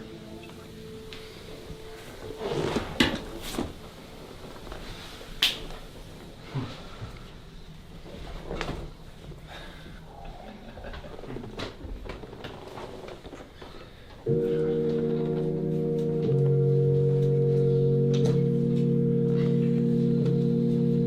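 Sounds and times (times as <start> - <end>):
organ-like chords: 14.2 - 21.0.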